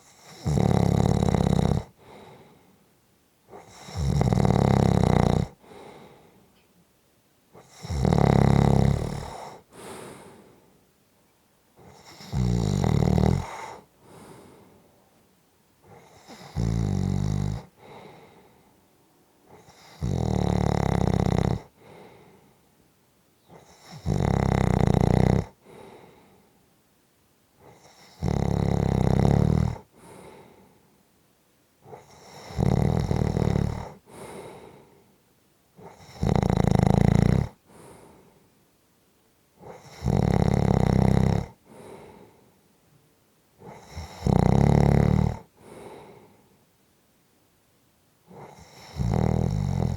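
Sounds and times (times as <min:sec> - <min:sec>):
person snoring: 0:00.1 - 0:02.6, 0:03.5 - 0:06.2, 0:07.6 - 0:10.4, 0:11.8 - 0:14.6, 0:15.9 - 0:18.4, 0:19.5 - 0:22.4, 0:23.5 - 0:26.4, 0:27.6 - 0:30.6, 0:31.9 - 0:35.0, 0:35.8 - 0:38.3, 0:39.6 - 0:42.4, 0:43.6 - 0:46.4, 0:48.3 - 0:49.9
soft breath out: 0:02.0 - 0:02.8, 0:05.6 - 0:06.7, 0:09.3 - 0:10.8, 0:13.4 - 0:15.0, 0:17.6 - 0:18.9, 0:21.8 - 0:22.7, 0:25.6 - 0:26.6, 0:29.9 - 0:31.0, 0:34.0 - 0:35.2, 0:37.6 - 0:38.5, 0:41.6 - 0:42.7, 0:45.6 - 0:46.6.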